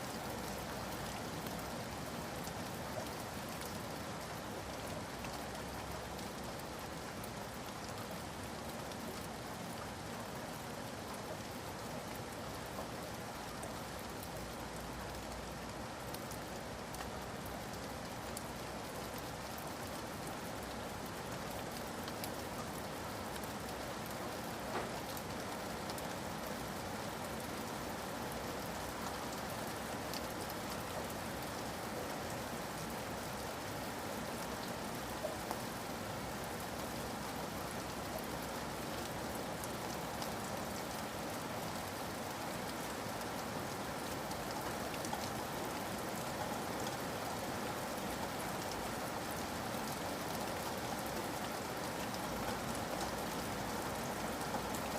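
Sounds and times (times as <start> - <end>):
steady rain in forest: 0.0 - 54.9
raindrop ticks: 24.6 - 26.5.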